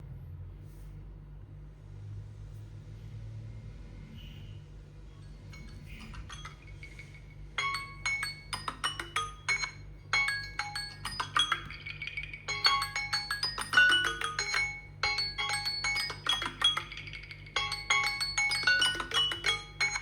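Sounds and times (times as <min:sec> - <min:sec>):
faint low hum: 0:00.0 - 0:20.0
smartphone ringtone chiming melody: 0:05.3 - 0:20.0.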